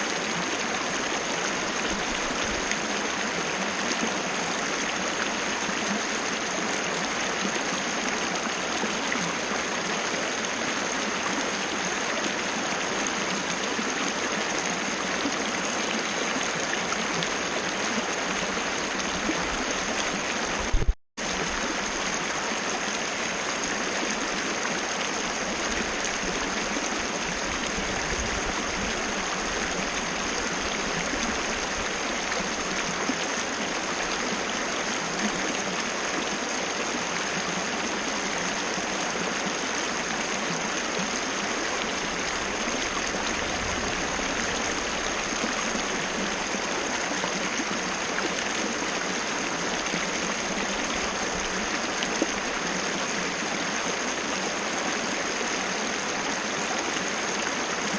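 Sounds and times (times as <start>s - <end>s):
waterfall rushing: 12.2s - 55.2s.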